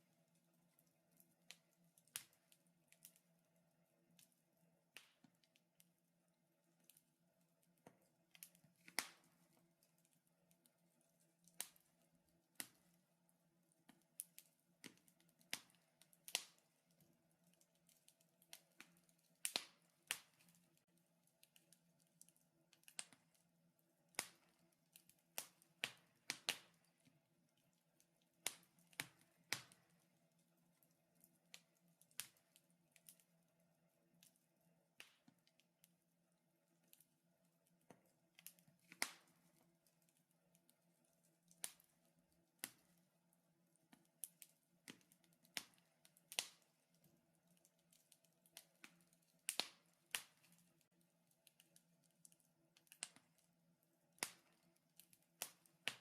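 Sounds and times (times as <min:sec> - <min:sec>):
wood fire crackling: 0:00.0 - 0:56.0.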